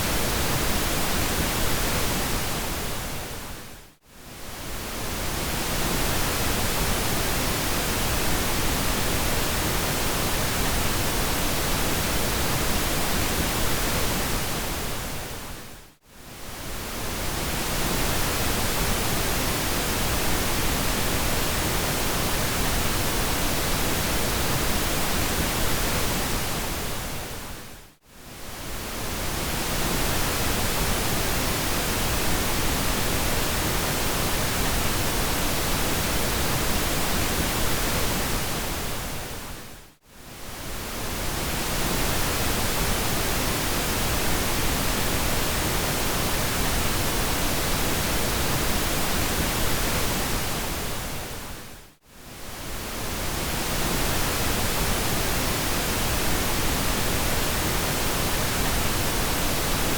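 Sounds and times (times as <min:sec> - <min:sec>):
steady pink noise hiss: 0:00.0 - 0:59.9.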